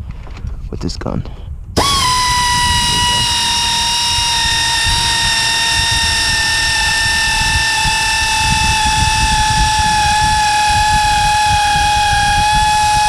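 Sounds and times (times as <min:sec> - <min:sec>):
pneumatic air gun whining: 0:01.8 - 0:13.0.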